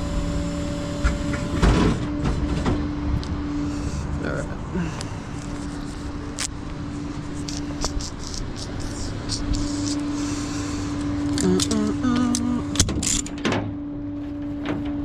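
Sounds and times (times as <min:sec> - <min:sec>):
vehicle engine idling: 0:00.0 - 0:13.2
brief voice-like sound: 0:11.4 - 0:12.8.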